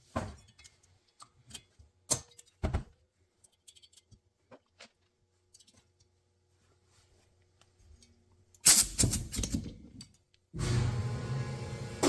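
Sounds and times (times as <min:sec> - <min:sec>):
metal clicks of valve springs: 0:08.6 - 0:09.6.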